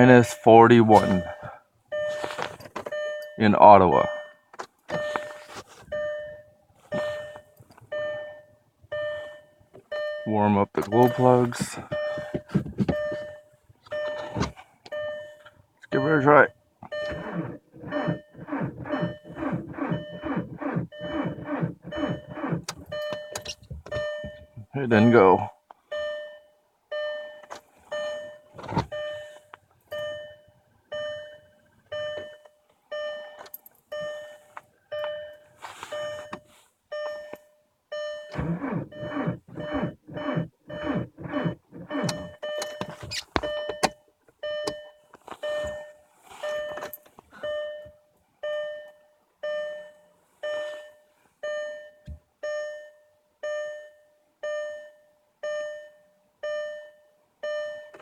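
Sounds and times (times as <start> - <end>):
car warning chime dinging: 0.0 - 58.0
starter cranking cold engine: 16.9 - 23.6, 38.3 - 43.0.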